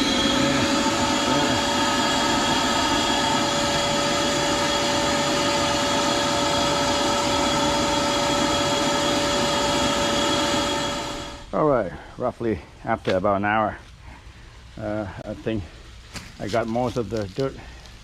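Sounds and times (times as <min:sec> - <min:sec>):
shop vacuum motor whining: 0:00.0 - 0:11.5.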